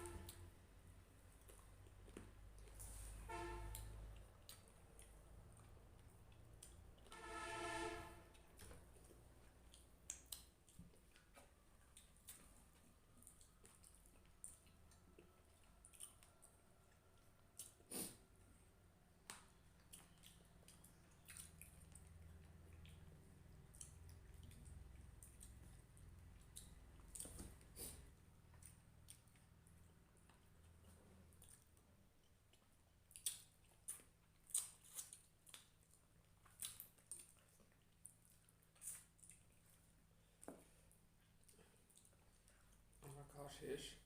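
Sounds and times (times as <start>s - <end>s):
wet chewing and smacking: 1.0s - 2.9s, 3.7s - 7.2s, 8.3s - 43.0s
wet mouth smacks: 33.1s - 33.6s.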